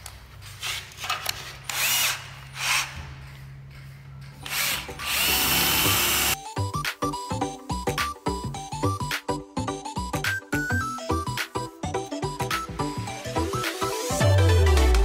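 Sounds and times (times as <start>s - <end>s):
electric drill boring into cement: 4.4s - 6.4s.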